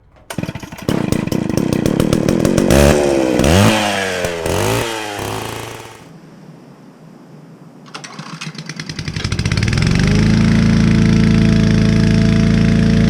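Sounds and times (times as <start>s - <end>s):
small petrol engine revving: 0.0s - 6.1s, 8.9s - 13.0s.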